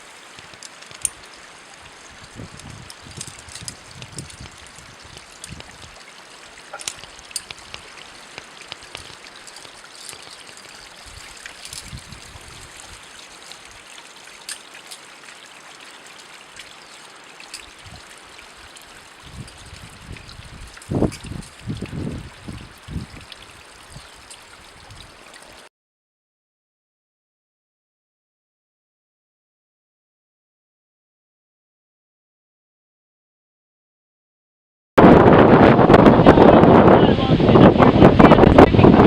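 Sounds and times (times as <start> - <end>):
stream water running: 0.0 - 25.7.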